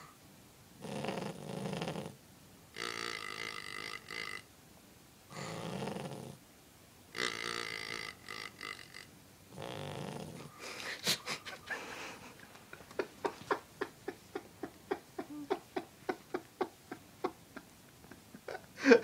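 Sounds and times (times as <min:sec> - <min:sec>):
dog snoring: 0:00.8 - 0:02.2, 0:05.3 - 0:06.4, 0:07.2 - 0:10.5.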